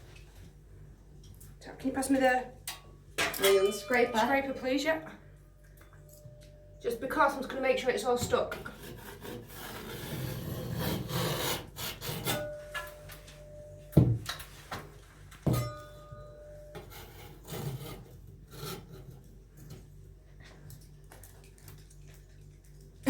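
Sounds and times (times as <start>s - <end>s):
scraper blade rubbing over mesh tape: 8.7s - 12.4s.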